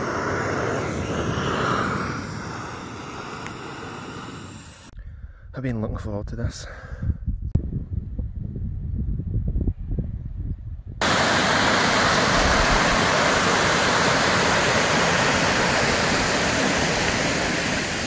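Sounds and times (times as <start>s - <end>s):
rushing water: 11.0s - 18.0s.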